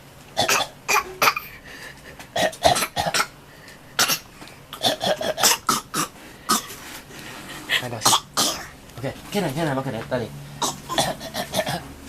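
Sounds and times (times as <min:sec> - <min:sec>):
baby coughing: 0:00.4 - 0:01.6, 0:02.4 - 0:03.4, 0:04.0 - 0:06.8, 0:08.0 - 0:08.8, 0:10.6 - 0:11.9.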